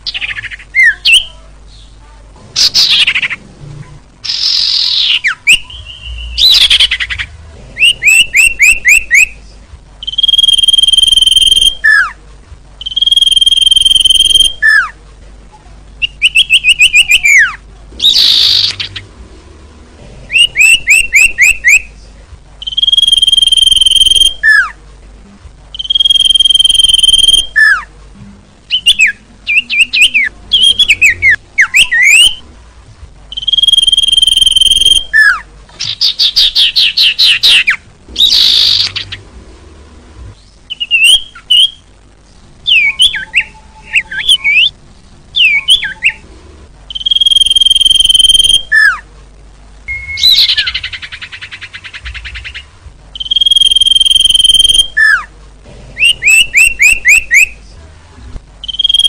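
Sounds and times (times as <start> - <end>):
bird call chirps and whistles: 4.2 - 9.4, 10.0 - 12.2, 12.8 - 14.9, 16.0 - 19.0, 20.3 - 21.9, 22.6 - 24.8, 25.7 - 27.9, 28.7 - 32.4, 33.3 - 39.2, 40.7 - 41.8, 42.7 - 44.8, 45.4 - 46.2, 46.9 - 49.0, 49.9 - 55.3, 56.0 - 57.6, 58.6 - 59.0.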